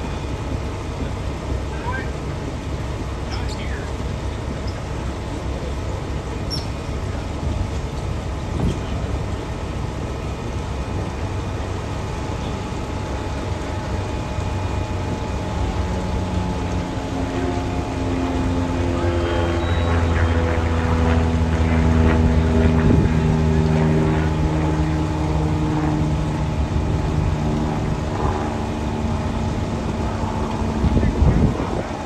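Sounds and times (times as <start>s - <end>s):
steady engine hum: 0.0s - 32.0s
wind buffeting microphone: 10.9s - 32.0s.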